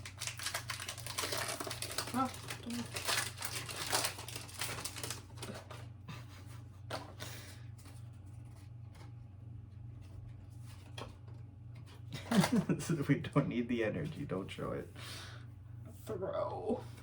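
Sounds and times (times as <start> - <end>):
trading cards rustling and scraping: 0.0 - 5.9, 6.5 - 12.6
steady low hum: 0.0 - 17.0.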